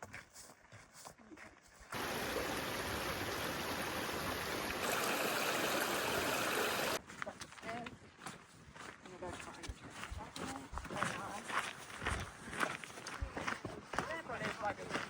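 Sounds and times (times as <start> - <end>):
running water rushing: 1.9 - 7.0.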